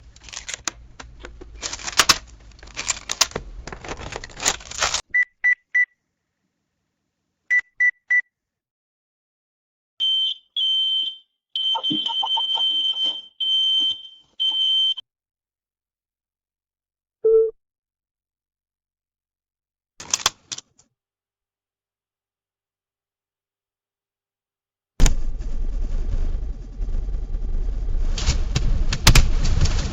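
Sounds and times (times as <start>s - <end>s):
dense clatter of clicks: 0.0s - 5.0s, 25.0s - 29.9s
alarm beeps: 10.0s - 15.0s
short high electronic beeps: 11.6s - 13.3s.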